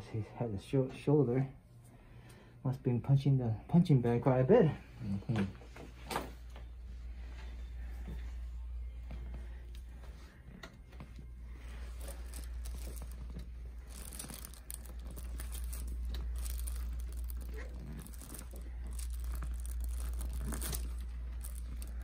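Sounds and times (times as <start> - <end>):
low steady hum: 0.0 - 22.0
fabric or paper rustling: 11.0 - 22.0.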